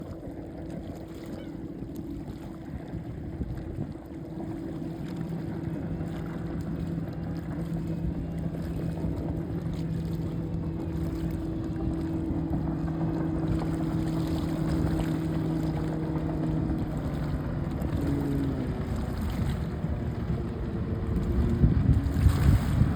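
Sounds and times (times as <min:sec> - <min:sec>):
motorboat engine humming: 0:00.0 - 0:22.9
wind and water noise: 0:00.0 - 0:22.9.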